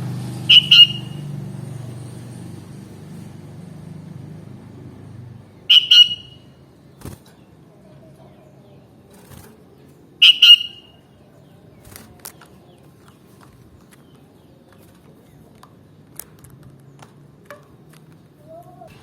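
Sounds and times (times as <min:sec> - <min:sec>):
bird two-note call: 0:00.5 - 0:01.4, 0:05.7 - 0:06.4, 0:10.2 - 0:11.0.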